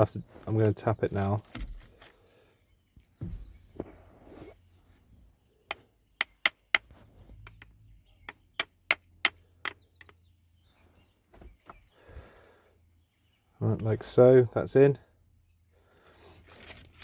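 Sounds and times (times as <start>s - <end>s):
handling noise: 0.3s - 2.1s, 3.1s - 4.6s, 16.0s - 17.0s.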